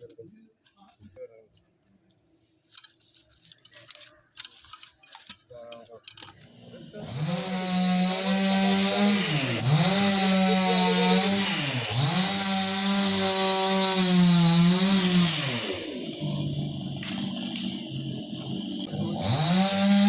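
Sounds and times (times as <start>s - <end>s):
chainsaw running: 6.5s - 20.0s.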